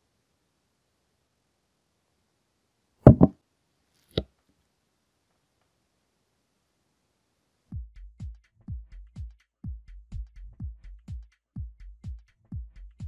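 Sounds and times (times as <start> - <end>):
sharp knocks: 3.1 - 3.3.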